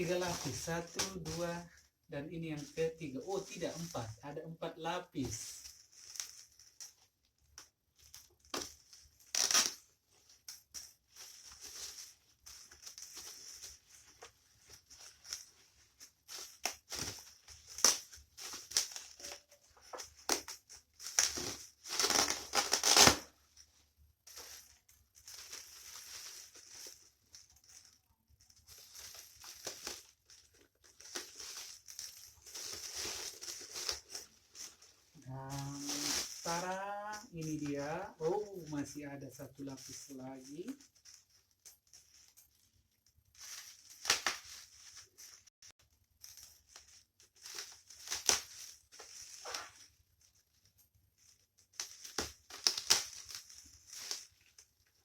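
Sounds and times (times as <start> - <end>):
packaging tearing and crumpling: 21.4 - 23.2.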